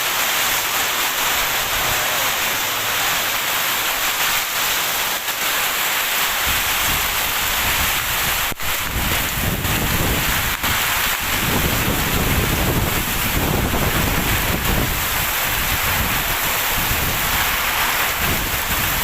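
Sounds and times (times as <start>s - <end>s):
heavy rain pouring: 0.0s - 19.0s
wind buffeting microphone: 6.4s - 19.0s.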